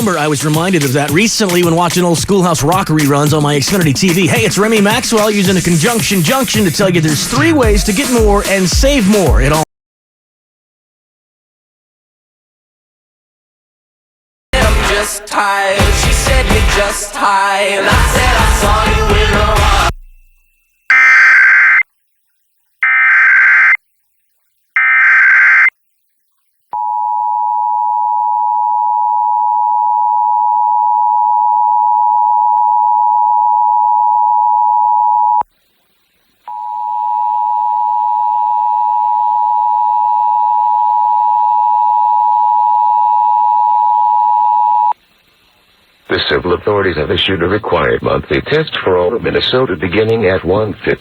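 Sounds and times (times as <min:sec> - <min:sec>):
screeching data bursts: 0:20.0 - 0:21.9, 0:22.8 - 0:23.8, 0:24.8 - 0:25.7
two-tone attention signal: 0:20.0 - 0:21.9, 0:22.8 - 0:23.8, 0:24.8 - 0:25.7
faint hiss: 0:35.4 - 0:36.7, 0:44.9 - 0:51.0.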